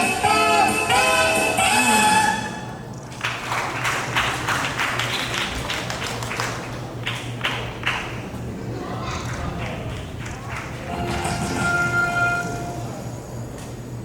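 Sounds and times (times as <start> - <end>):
music: 0.0 - 2.7, 10.9 - 13.0
audience applauding: 3.1 - 8.2, 9.2 - 11.6.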